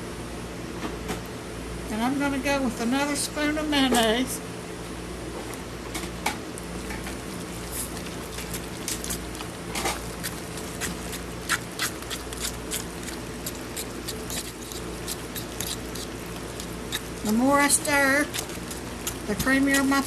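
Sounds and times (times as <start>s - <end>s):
steady low hum: 0.0s - 20.0s
spoon stirring and scraping bowl: 7.0s - 20.0s.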